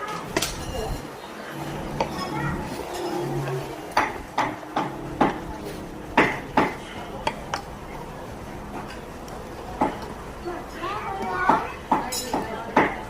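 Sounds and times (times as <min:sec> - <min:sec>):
utensils and dishes clattering: 0:00.0 - 0:07.8, 0:08.6 - 0:10.2, 0:11.2 - 0:13.0.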